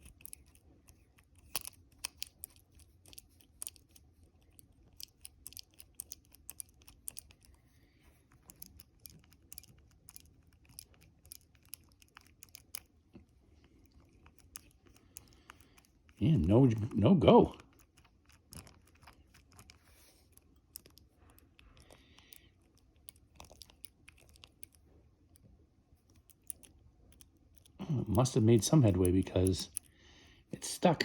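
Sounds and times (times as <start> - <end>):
lock tool clicks and scrapes: 0.0 - 7.6.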